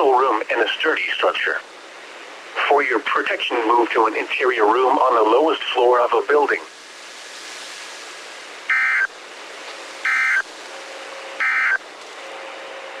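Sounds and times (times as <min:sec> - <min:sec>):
radio hiss: 0:00.0 - 0:06.8
digital data tone bursts: 0:08.7 - 0:09.1, 0:10.1 - 0:10.4, 0:11.4 - 0:11.8.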